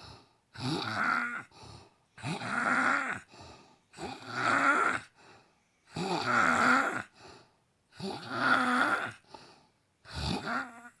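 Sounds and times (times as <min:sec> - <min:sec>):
woman snoring: 0:00.6 - 0:01.5, 0:02.2 - 0:03.3, 0:04.0 - 0:05.2, 0:05.9 - 0:07.2, 0:08.0 - 0:09.3, 0:10.1 - 0:11.0.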